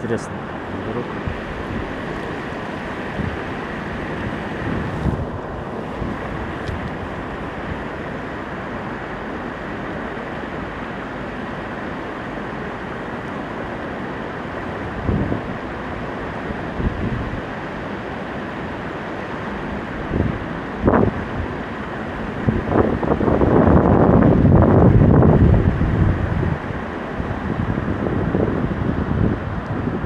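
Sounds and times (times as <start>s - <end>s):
wind on microphone: 0.0s - 8.1s, 14.6s - 17.6s, 19.6s - 30.0s.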